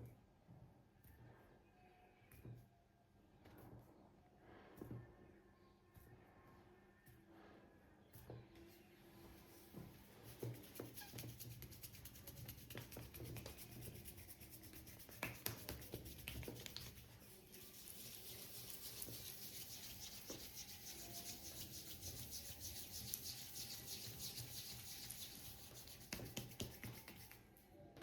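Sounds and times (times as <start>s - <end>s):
massage strokes rubbing skin: 9.4s - 27.4s.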